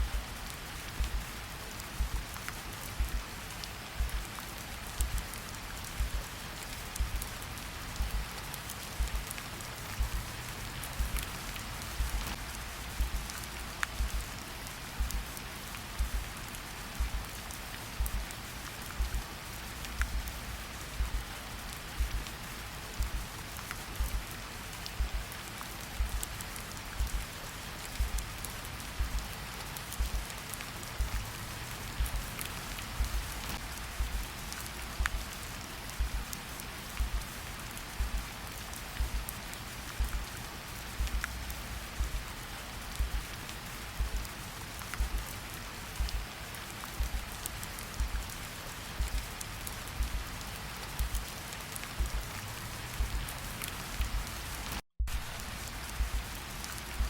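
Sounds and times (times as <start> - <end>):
slow heartbeat thumps: 0.0 - 0.3, 0.9 - 1.3, 2.0 - 2.3, 3.0 - 3.3, 4.0 - 4.3, 4.9 - 6.3, 7.0 - 7.3, 8.0 - 8.3, 9.0 - 9.3, 9.9 - 10.3, 10.9 - 11.3, 11.9 - 12.4, 13.0 - 13.3, 14.0 - 14.3, 15.0 - 15.3, 16.0 - 16.3, 17.0 - 17.3, 18.0 - 18.3, 19.0 - 19.3, 19.9 - 21.3, 22.0 - 22.3, 23.0 - 23.3, 24.0 - 24.3, 25.0 - 25.3, 26.0 - 26.3, 27.0 - 27.3, 28.0 - 28.3, 29.0 - 29.3, 30.0 - 30.3, 31.0 - 31.3, 32.0 - 32.3, 33.0 - 35.4, 36.0 - 36.3, 37.0 - 37.4, 38.0 - 38.3, 39.0 - 39.4, 40.0 - 40.3, 41.0 - 42.3, 43.0 - 44.4, 45.0 - 45.3, 46.0 - 46.3, 47.0 - 48.4, 49.0 - 51.4, 52.0 - 52.4, 53.0 - 53.3, 54.0 - 57.0
steady rain falling: 0.0 - 57.0.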